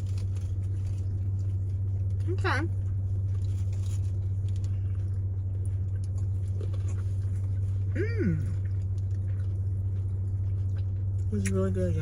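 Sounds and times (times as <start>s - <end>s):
food wrapper rustling: 0.0s - 2.2s, 2.9s - 5.1s
car interior hum: 0.0s - 12.0s.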